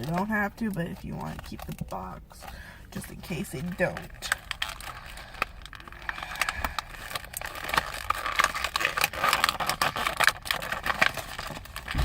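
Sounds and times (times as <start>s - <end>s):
packaging rustling and crinkling: 0.0s - 12.0s
small clicks and crackles: 0.0s - 12.0s.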